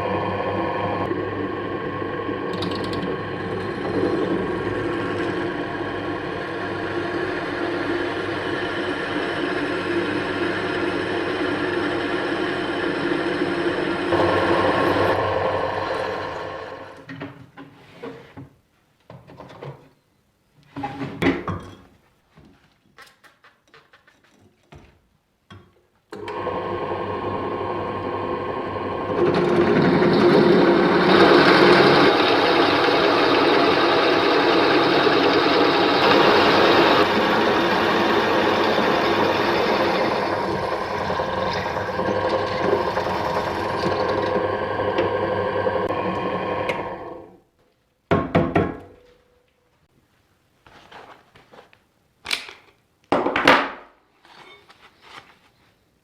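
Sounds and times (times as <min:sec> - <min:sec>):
power tool motor running: 0:29.2 - 0:47.0.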